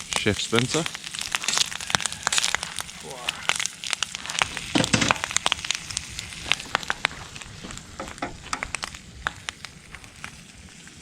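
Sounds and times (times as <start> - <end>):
food sizzling in a pan: 0.0 - 11.0
sharp pops and spits: 0.0 - 11.0.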